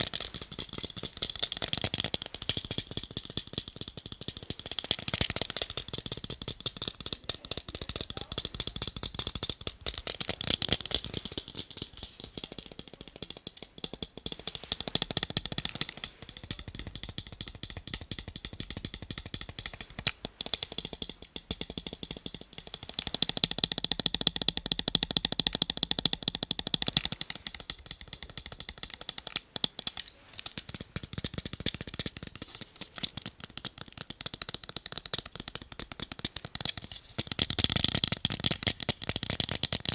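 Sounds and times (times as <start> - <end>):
rapid tapping on eyeglasses: 0.0 - 39.9.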